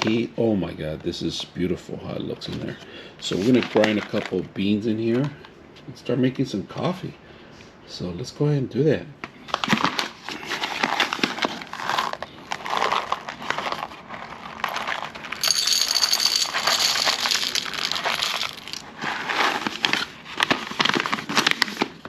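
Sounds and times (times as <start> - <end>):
bag crinkling: 9.6 - 22.0
coffee beans rattling into metal bowl: 14.6 - 19.9.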